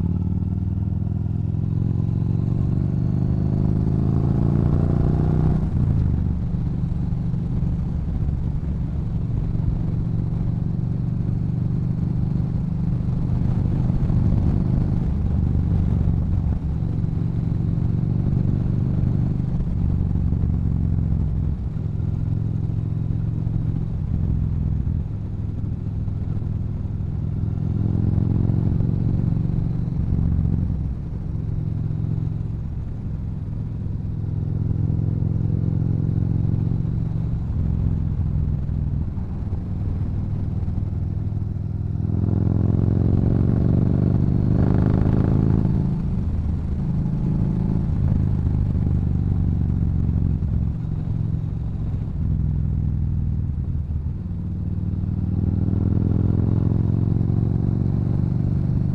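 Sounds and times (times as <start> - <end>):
motorcycle engine running: 0.0 - 58.9.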